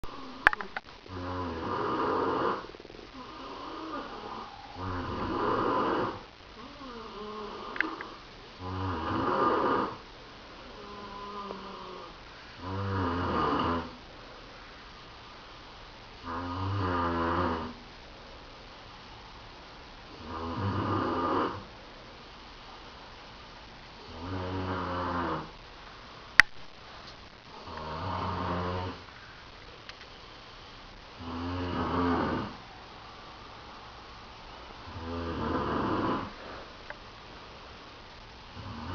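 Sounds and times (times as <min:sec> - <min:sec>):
person snoring: 0:00.0 - 0:10.0, 0:10.6 - 0:14.0, 0:16.2 - 0:17.8, 0:20.1 - 0:21.7, 0:24.0 - 0:25.6, 0:27.5 - 0:29.1, 0:31.2 - 0:32.6, 0:34.8 - 0:36.7, 0:38.5 - 0:38.9
quiet breathing: 0:00.0 - 0:16.8, 0:17.5 - 0:38.9
sharp click: 0:00.4 - 0:00.9, 0:26.4 - 0:26.7.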